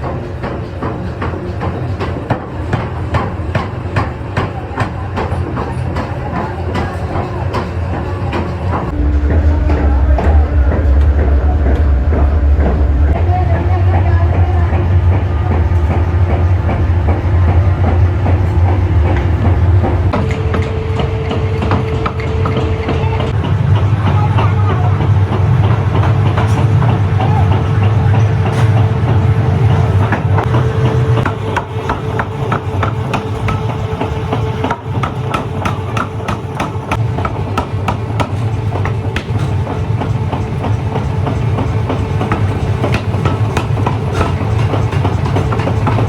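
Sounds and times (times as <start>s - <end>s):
heavy machinery humming: 0.0s - 46.0s.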